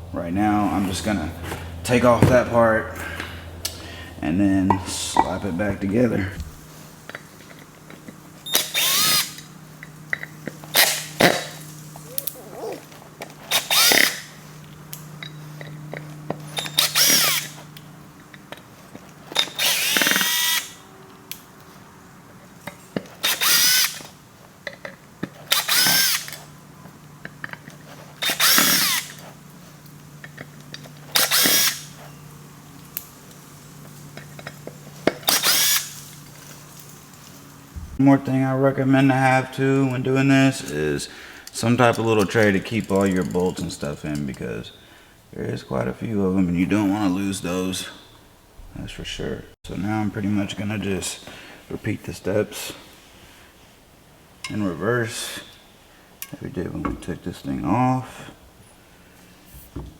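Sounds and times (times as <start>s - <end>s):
power drill spinning out screws: 6.4s - 12.4s, 13.3s - 17.8s, 19.3s - 20.8s, 23.1s - 24.2s, 25.3s - 26.6s, 28.2s - 29.3s, 30.3s - 32.2s, 34.3s - 36.9s, 40.7s - 44.5s.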